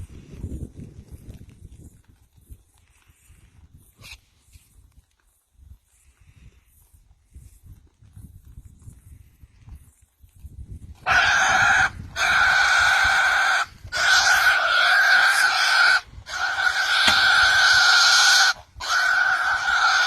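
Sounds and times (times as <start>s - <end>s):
boar squealing: 11.0s - 20.0s.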